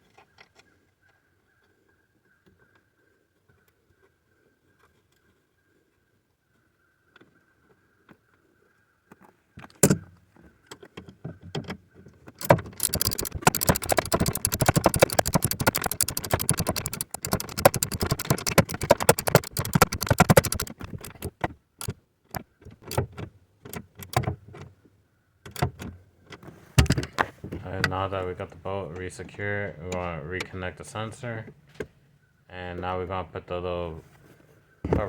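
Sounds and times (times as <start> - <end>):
metallic ratchet clicks: 12.4 - 23.0.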